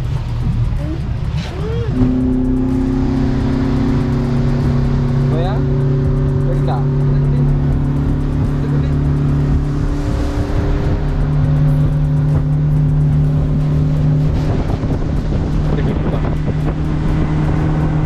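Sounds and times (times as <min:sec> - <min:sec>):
background music with held chords: 0:00.0 - 0:18.0
speedboat motor: 0:00.0 - 0:18.0
wind and water rushing: 0:02.4 - 0:06.5, 0:07.7 - 0:18.0.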